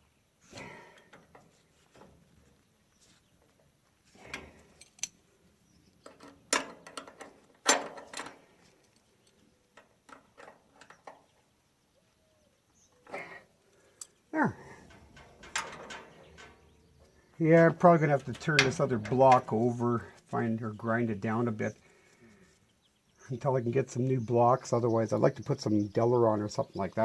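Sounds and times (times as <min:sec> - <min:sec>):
roller chain clanking and scraping: 0:14.4 - 0:20.1.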